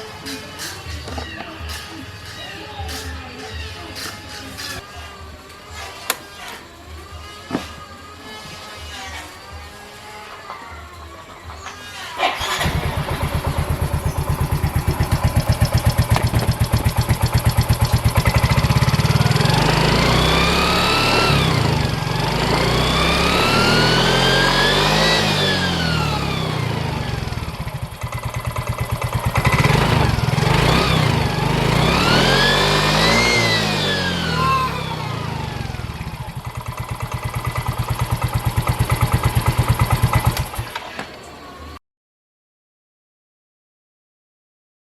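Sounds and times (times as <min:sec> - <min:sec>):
scooter engine revving: 0:11.8 - 0:41.1.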